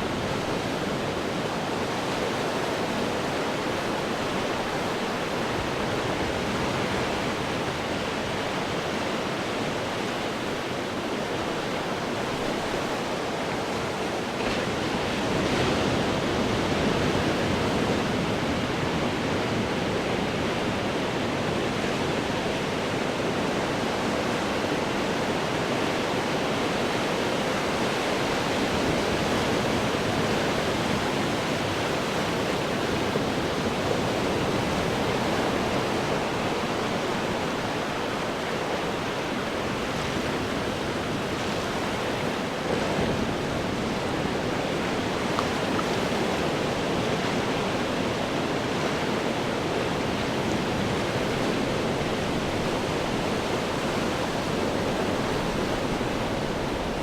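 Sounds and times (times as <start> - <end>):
ocean surf breaking against rocks: 0.0 - 57.0.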